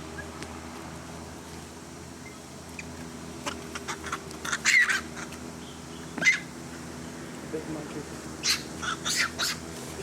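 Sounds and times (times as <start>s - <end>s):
steady low hum: 0.0s - 10.0s
harsh animal squawk: 3.8s - 5.3s, 6.2s - 6.5s, 8.4s - 9.7s.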